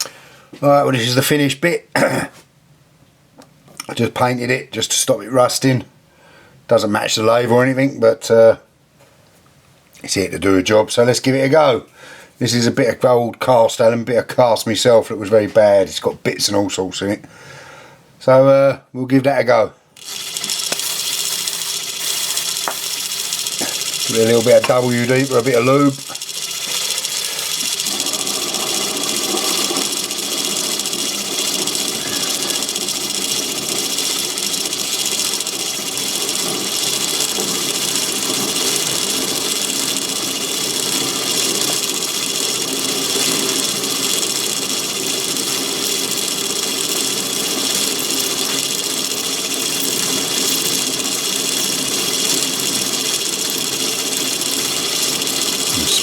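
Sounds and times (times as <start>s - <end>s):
lathe cutting metal whine: 20.4s - 56.0s.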